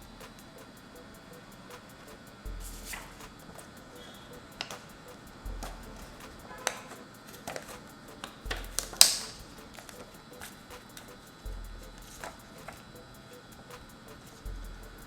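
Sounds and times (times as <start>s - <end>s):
background music with low pulse: 0.0s - 15.0s
plastic clips snapping: 4.6s - 11.1s.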